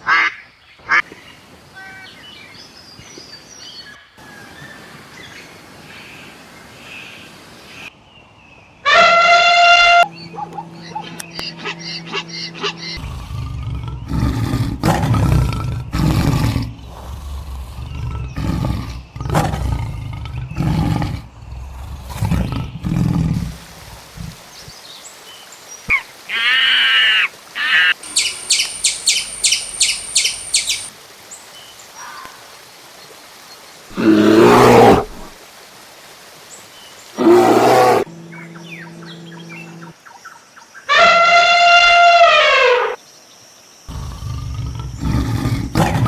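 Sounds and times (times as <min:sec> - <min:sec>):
deep low animal calls: 0:26.3 - 0:30.9
high chirping bird call: 0:27.6 - 0:30.9.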